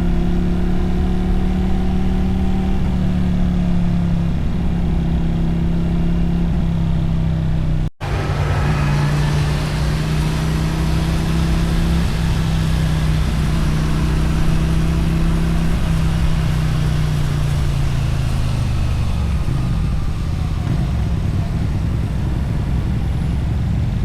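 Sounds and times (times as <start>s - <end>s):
motorcycle engine cruising: 0.0s - 24.0s
wind and road noise: 0.0s - 24.0s.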